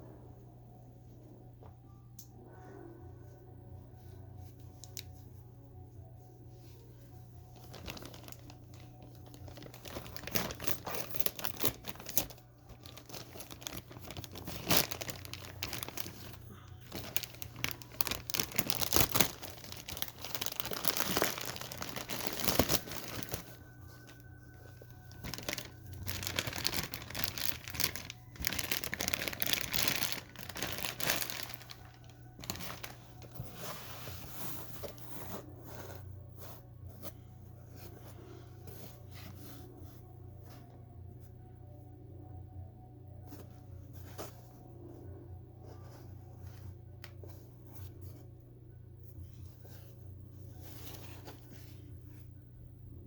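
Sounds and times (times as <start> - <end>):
packaging crinkling and tearing: 7.5 - 33.4.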